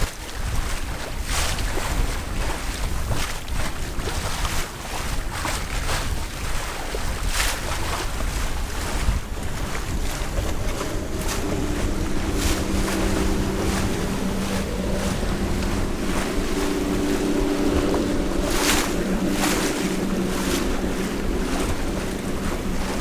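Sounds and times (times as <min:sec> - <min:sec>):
waves splashing against hull: 0:00.0 - 0:23.0
wind buffeting microphone: 0:00.0 - 0:23.0
steady low hum: 0:08.1 - 0:23.0.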